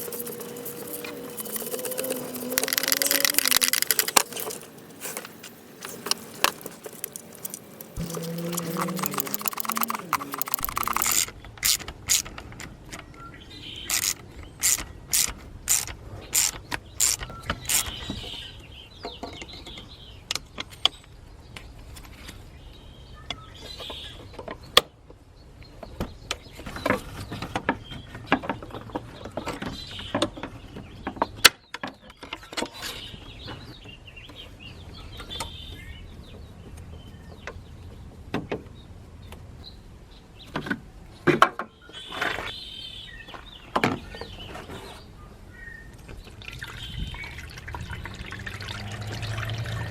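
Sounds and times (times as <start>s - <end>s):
hand tools clicking on metal: 0.0s - 4.6s, 5.8s - 13.0s, 13.9s - 17.9s.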